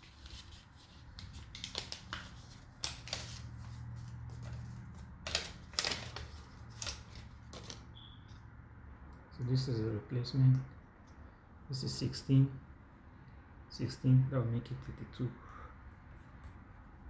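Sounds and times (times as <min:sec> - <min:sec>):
plastic clicks and rustles: 0:04.4 - 0:07.9.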